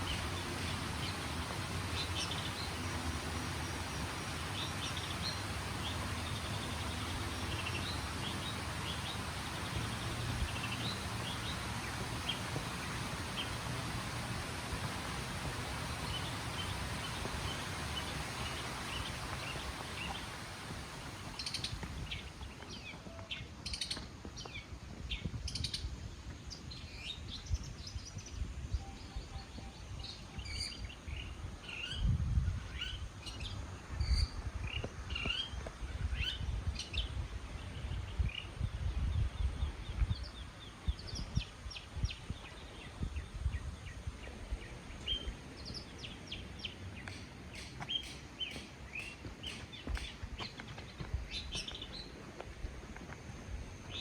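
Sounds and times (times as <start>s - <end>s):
hiss: 0.0s - 22.5s
small birds chirping: 0.0s - 52.2s.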